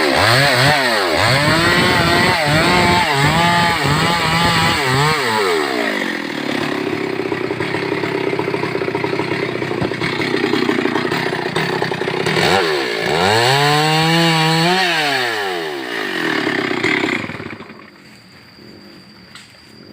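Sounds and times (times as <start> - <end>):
chainsaw cutting wood: 0.0 - 18.0.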